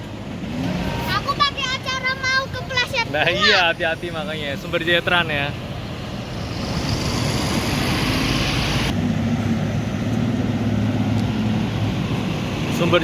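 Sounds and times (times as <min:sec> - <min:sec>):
bus passing: 0:00.0 - 0:13.0
low engine drone: 0:03.6 - 0:12.7.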